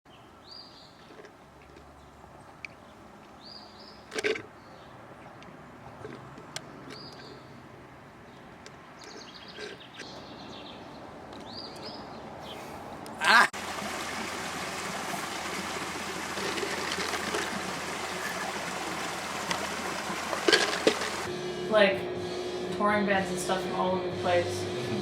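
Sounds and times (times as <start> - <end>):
faint outdoor hiss: 6.8 - 21.3.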